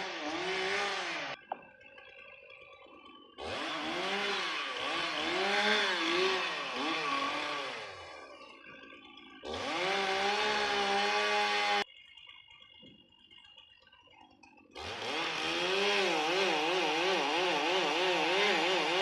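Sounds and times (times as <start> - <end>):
chainsaw engine revving: 0.0 - 1.4, 3.4 - 11.8, 14.8 - 19.0.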